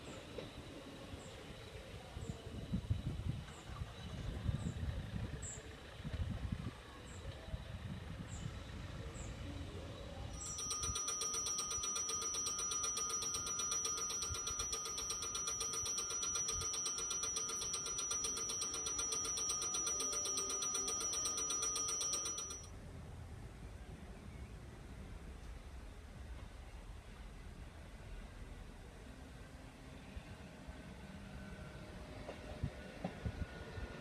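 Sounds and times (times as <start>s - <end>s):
level crossing warning bell: 10.3s - 22.7s.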